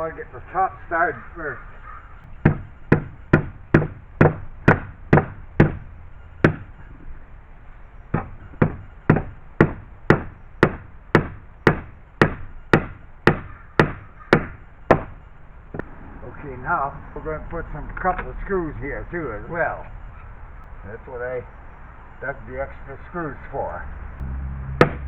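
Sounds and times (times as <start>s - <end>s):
hammer driving nails into wood: 6.4s - 6.7s, 8.1s - 15.1s.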